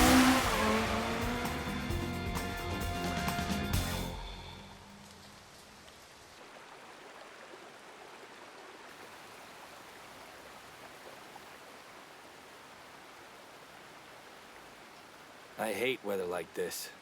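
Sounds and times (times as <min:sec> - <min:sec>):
heavy rain falling: 0:00.0 - 0:01.4.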